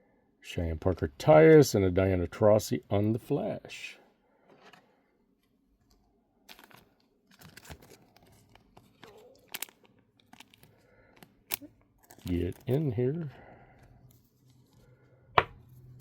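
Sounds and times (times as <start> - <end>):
card packaging crinkling: 6.5 - 13.1.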